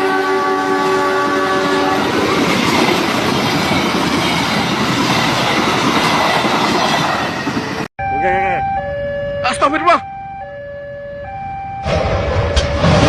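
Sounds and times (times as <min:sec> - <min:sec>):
train horn: 0:00.0 - 0:02.2.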